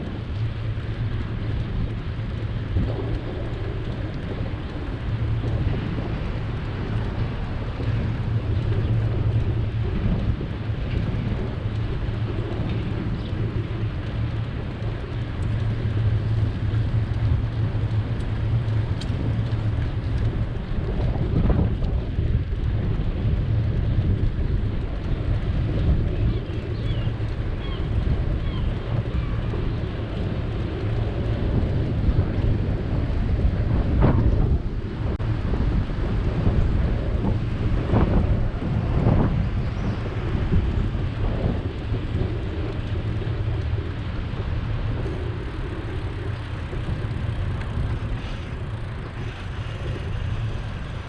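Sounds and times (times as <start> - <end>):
wind rumble on microphone: 0.0 - 51.0
city traffic: 34.4 - 51.0.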